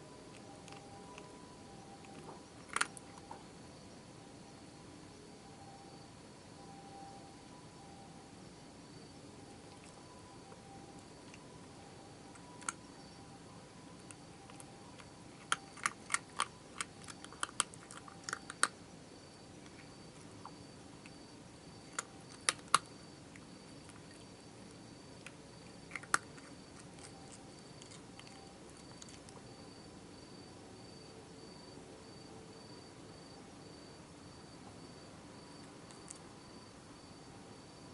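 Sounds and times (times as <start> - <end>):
crickets trilling: 0.0 - 37.9
cat crunching dry food: 0.3 - 1.3, 2.0 - 3.4, 9.6 - 11.5, 12.2 - 12.9, 13.9 - 18.8, 19.5 - 29.6.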